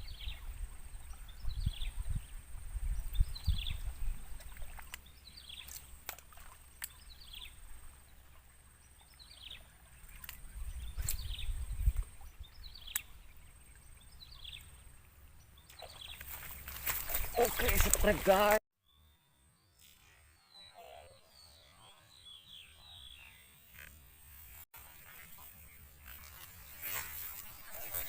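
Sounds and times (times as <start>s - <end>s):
low rumble on microphone: 0.0s - 4.8s.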